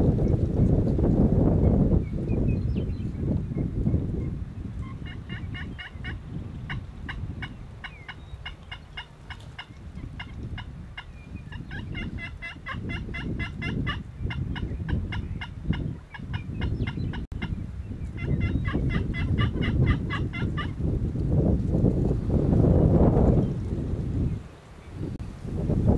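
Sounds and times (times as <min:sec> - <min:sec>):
turkey gobbling: 0:04.8 - 0:17.6, 0:18.2 - 0:20.8.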